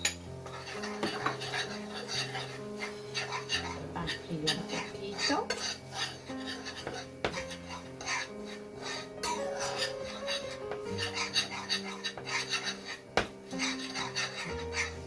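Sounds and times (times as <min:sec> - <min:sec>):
background music: 0:00.0 - 0:15.0
utensil scraping a pan: 0:00.3 - 0:15.0
utensil knocking against pan: 0:06.8 - 0:07.5, 0:13.1 - 0:13.4.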